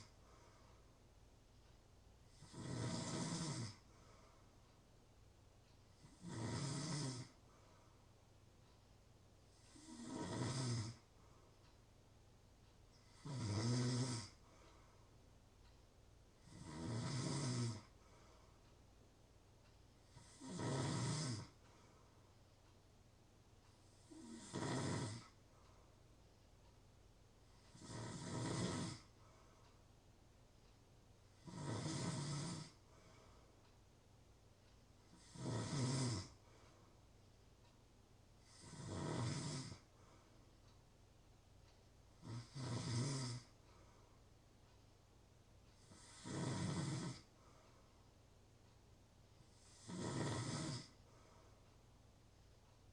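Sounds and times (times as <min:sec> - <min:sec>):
person snoring: 0:02.3 - 0:03.9, 0:06.0 - 0:07.4, 0:09.6 - 0:11.0, 0:13.0 - 0:14.5, 0:16.4 - 0:17.9, 0:20.1 - 0:21.6, 0:24.0 - 0:25.4, 0:27.7 - 0:29.1, 0:31.4 - 0:32.8, 0:35.1 - 0:36.4, 0:38.4 - 0:39.8, 0:42.2 - 0:43.5, 0:45.8 - 0:47.3, 0:49.5 - 0:51.0.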